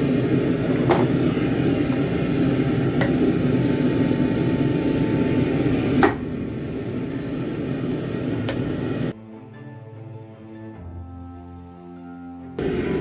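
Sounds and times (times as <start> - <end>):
gas forge burner rushing: 0.0 - 9.1
sharp metallic clank: 6.0 - 6.4, 7.3 - 7.6
background music: 9.1 - 13.0.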